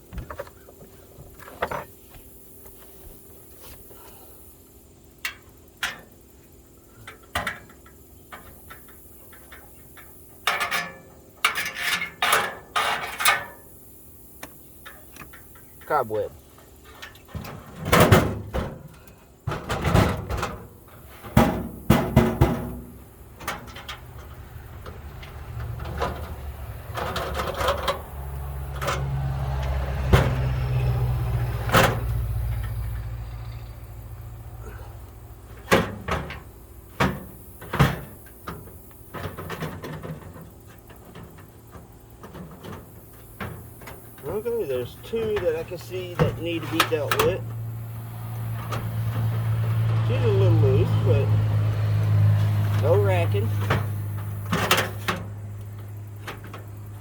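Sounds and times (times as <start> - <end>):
metal toolbox knocks and clanks: 7.1 - 8.5, 16.9 - 24.2, 25.2 - 28.1, 35.4 - 47.4, 52.6 - 55.3
drawer rolling on runners: 19.6 - 33.7.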